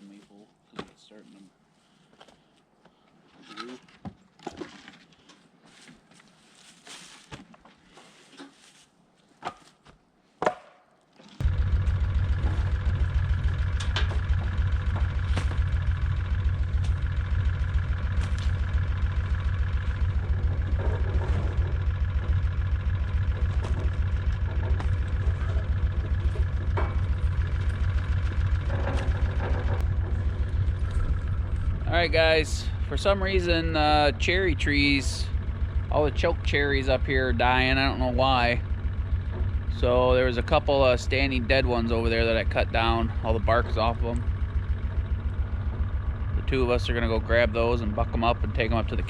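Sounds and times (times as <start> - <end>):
vehicle engine low pulsing: 11.4 - 49.0.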